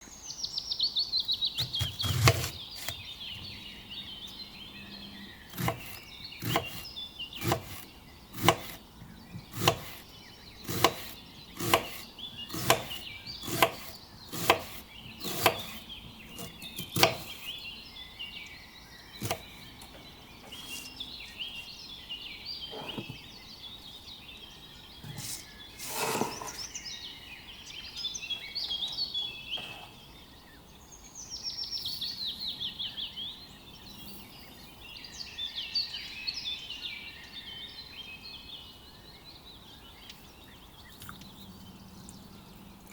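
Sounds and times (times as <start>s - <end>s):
birds chirping: 0.0s - 42.9s
knife chopping onion on wood: 1.6s - 3.0s, 5.5s - 10.0s, 10.6s - 17.5s, 19.2s - 19.6s.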